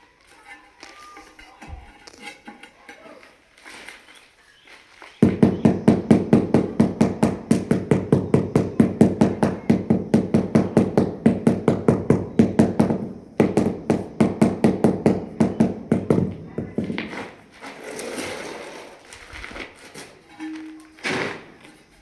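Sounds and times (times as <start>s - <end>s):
rapid even knocking: 5.2s - 17.4s.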